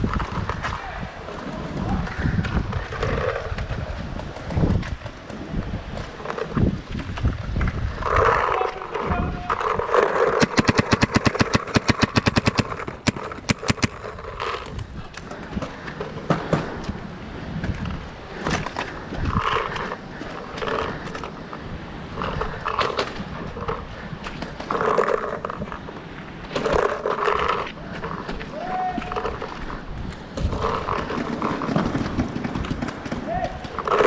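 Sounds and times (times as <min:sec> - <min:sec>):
paintball marker firing shots: 0:10.4 - 0:14.2.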